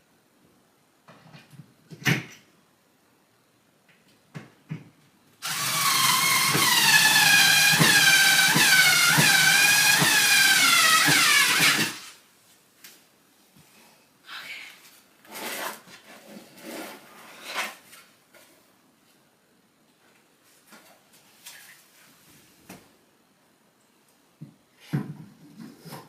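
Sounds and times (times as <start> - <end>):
electric drill running: 5.4 - 12.2.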